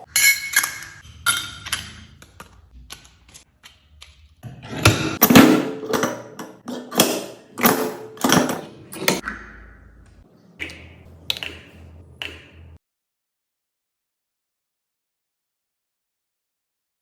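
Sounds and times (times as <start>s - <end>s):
mechanical clacks and knocks: 4.4s - 9.2s.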